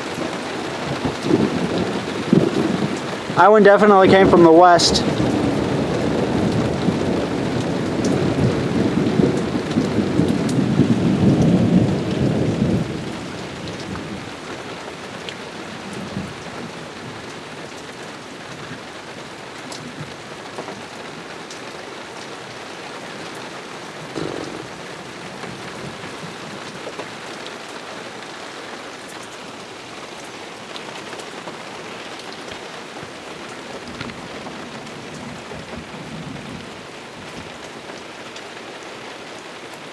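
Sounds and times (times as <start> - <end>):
thunder rumbling: 0.0 - 17.2, 24.0 - 27.5
heavy rain falling: 0.0 - 39.9
low thump: 24.2 - 26.2.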